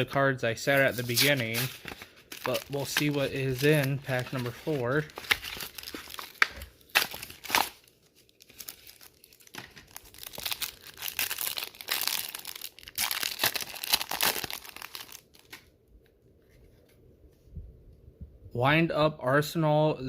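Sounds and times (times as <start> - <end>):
foil wrapper crinkling: 0.8 - 15.6
foil wrapper tearing: 0.9 - 15.6.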